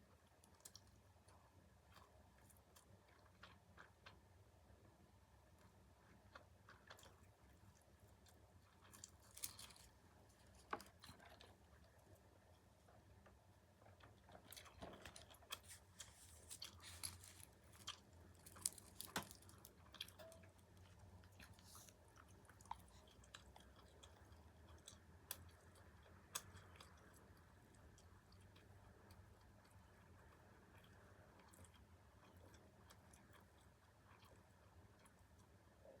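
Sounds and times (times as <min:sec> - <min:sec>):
person chewing crunchy food: 0:05.6 - 0:12.2, 0:13.8 - 0:35.5.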